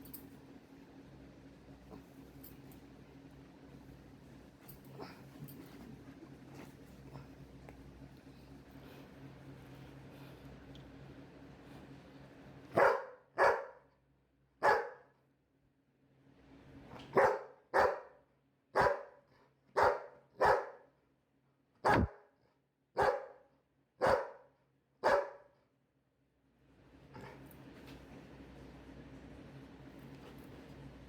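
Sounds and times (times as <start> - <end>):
dog barking: 12.7 - 13.9, 14.6 - 15.1, 17.1 - 19.2, 19.8 - 20.9, 21.8 - 22.3, 23.0 - 23.4, 24.0 - 25.5.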